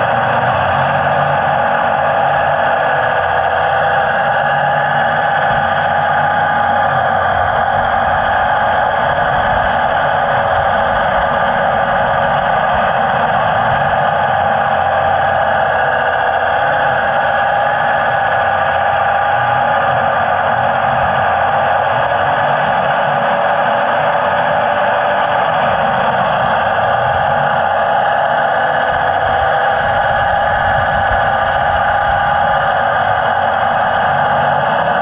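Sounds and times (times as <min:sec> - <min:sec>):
model vehicle motor whir: 0:00.0 - 0:35.0.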